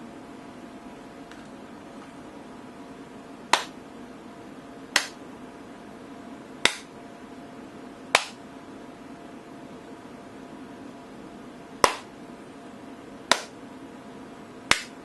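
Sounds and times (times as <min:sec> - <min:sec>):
finger snaps: 0:03.5 - 0:03.8, 0:05.0 - 0:05.2, 0:06.6 - 0:06.9, 0:08.1 - 0:08.4, 0:11.8 - 0:12.1, 0:13.3 - 0:13.6, 0:14.7 - 0:15.0.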